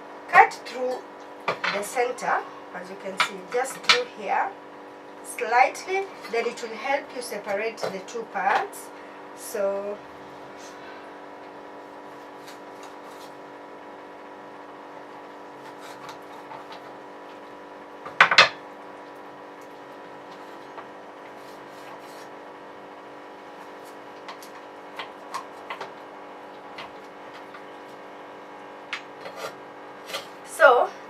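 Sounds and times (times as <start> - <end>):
knife scraping on a board: 12.1 - 13.4, 15.6 - 16.9, 20.3 - 22.4, 29.2 - 30.4.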